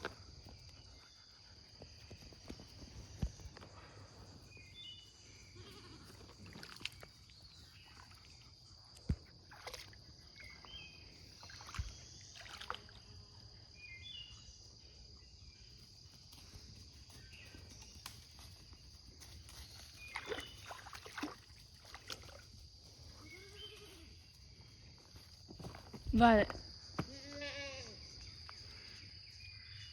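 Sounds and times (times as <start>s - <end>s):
splashy noises: 9.5s - 10.0s, 11.4s - 13.0s, 20.1s - 22.4s.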